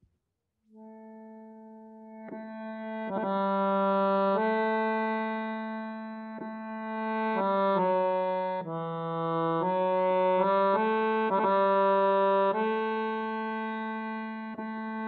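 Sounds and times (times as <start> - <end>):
accordion playing sustained chords: 0.8 - 15.0.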